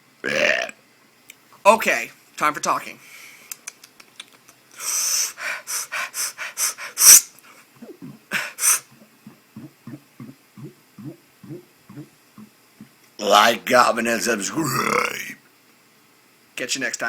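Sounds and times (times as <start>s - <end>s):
man gasping: 7.8s - 9.0s.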